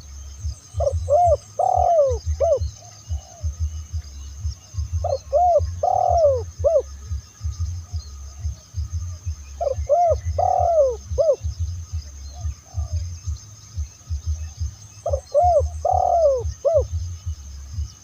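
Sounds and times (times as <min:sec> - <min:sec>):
low fast throbbing pulse: 0:00.0 - 0:18.0
dove cooing: 0:00.6 - 0:07.2, 0:09.2 - 0:13.4, 0:14.1 - 0:17.4.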